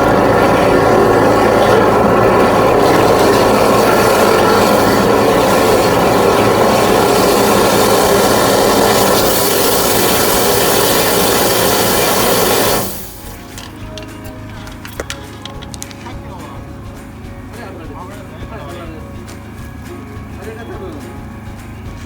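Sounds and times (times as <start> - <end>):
water jet rushing: 0.0 - 13.8
pump engine droning: 0.0 - 22.0.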